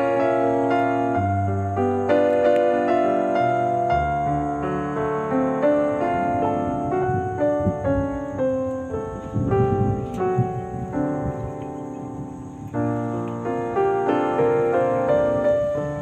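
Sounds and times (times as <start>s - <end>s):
slow piano melody: 0.0s - 16.0s
faint low rustle: 3.4s - 16.0s.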